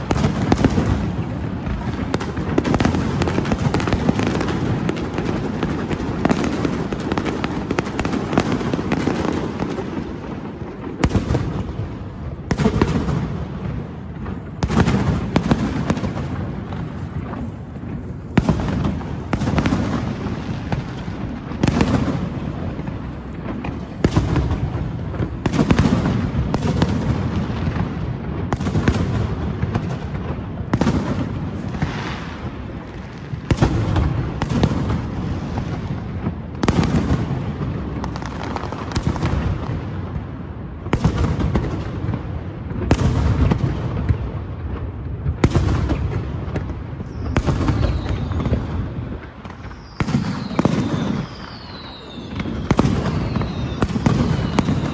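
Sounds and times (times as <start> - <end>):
fireworks bursting: 0.0 - 54.9
fireworks crackle: 0.0 - 54.9
falling whistle: 49.7 - 53.8.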